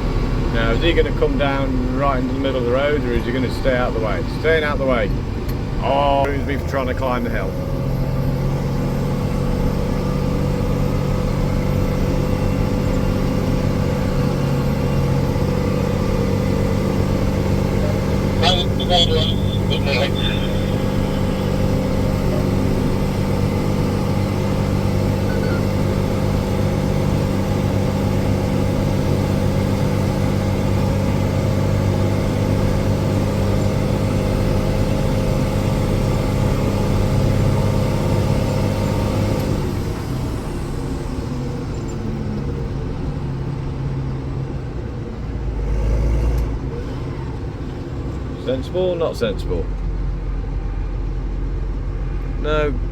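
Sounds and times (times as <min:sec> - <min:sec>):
tractor engine running: 0:11.3 - 0:36.4.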